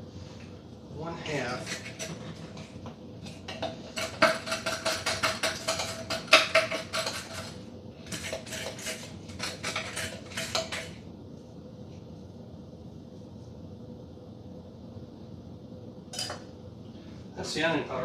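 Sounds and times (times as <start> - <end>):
utensils and dishes clinking: 16.1 - 16.5.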